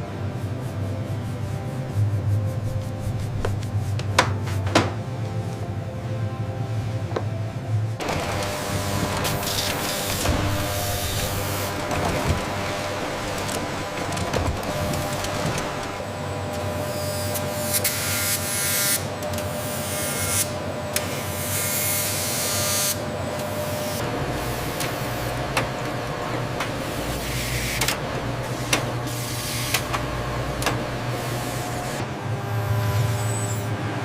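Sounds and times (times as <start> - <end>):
small machinery humming: 8.0 - 34.0.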